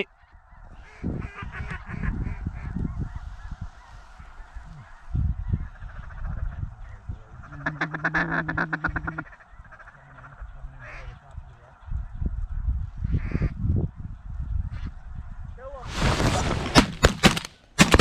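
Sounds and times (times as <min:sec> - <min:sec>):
geese honking: 0:00.0 - 0:11.7
ducks calling: 0:00.0 - 0:12.1
wind on microphone: 0:00.6 - 0:07.7, 0:10.4 - 0:16.9.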